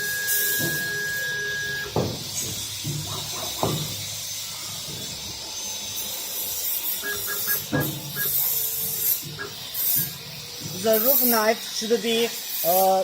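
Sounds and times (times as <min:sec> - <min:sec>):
sharp knocks on lathe: 0:00.5 - 0:01.0, 0:02.0 - 0:04.1, 0:07.5 - 0:08.2, 0:08.8 - 0:11.0
short high beeps: 0:07.0 - 0:08.5.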